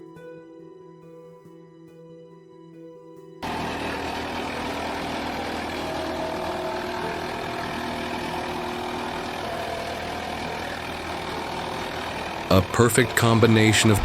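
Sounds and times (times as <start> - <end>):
wood grinder engine running: 3.4 - 14.0.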